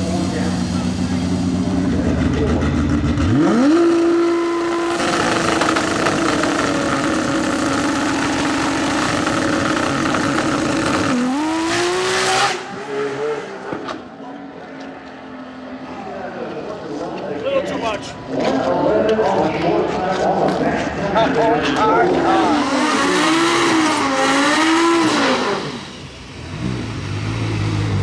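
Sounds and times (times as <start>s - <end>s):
race car engine revving: 0.0s - 14.1s, 22.0s - 28.0s.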